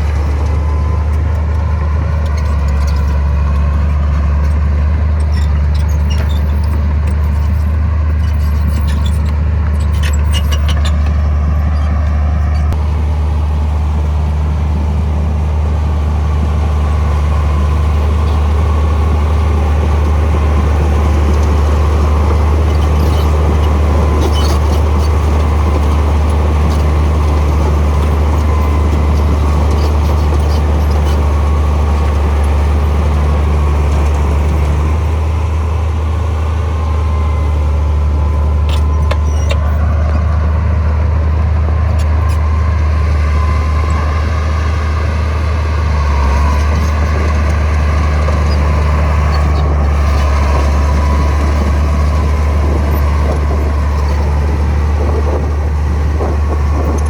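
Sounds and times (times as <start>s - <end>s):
diesel engine running under load: 0.0s - 57.0s.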